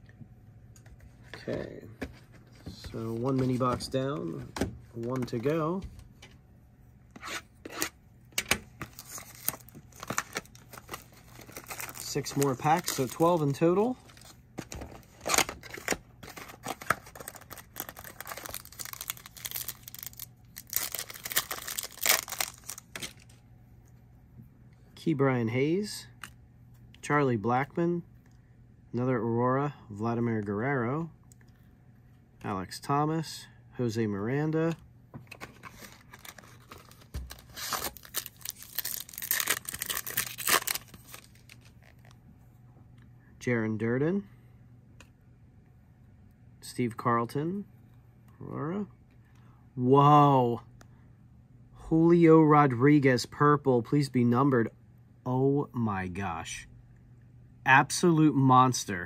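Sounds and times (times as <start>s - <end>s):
wrappers crinkling and tearing: 8.8s - 23.4s, 35.4s - 42.1s.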